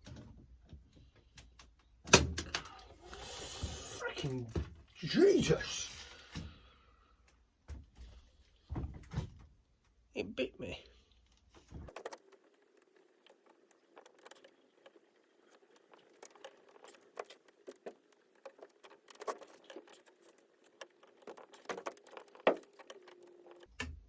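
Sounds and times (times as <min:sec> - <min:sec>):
metallic clicks and rattles: 0:11.2 - 0:24.0.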